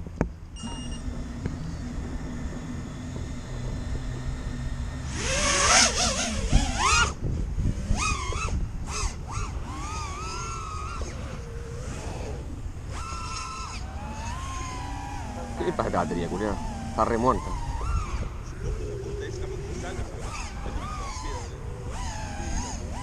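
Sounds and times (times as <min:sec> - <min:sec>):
steady low rumble: 0:00.0 - 0:07.9
drone motors whining: 0:00.0 - 0:23.0.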